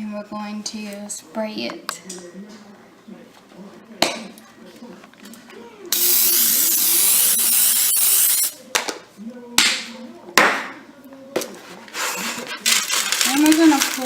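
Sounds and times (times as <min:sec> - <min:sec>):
aerosol spray hissing: 0:06.0 - 0:08.6.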